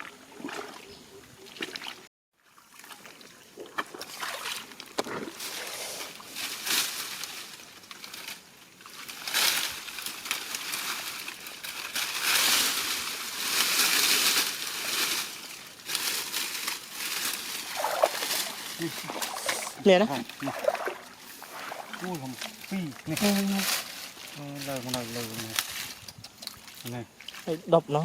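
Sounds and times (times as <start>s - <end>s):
water sloshing and splashing: 0.0s - 6.7s, 16.0s - 27.6s.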